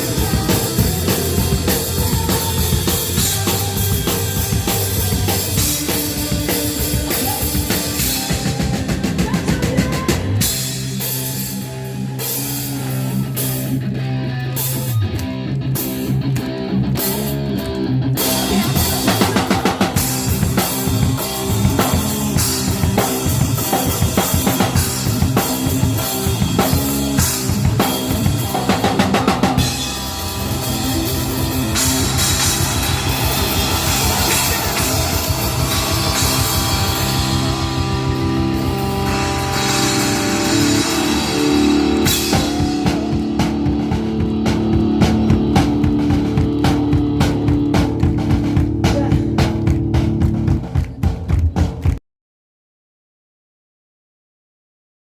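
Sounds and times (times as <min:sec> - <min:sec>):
guitar and bass chords: 0:00.0 - 0:52.0
live rock band playing: 0:00.0 - 0:52.0
drum kit hits: 0:18.4 - 0:52.0.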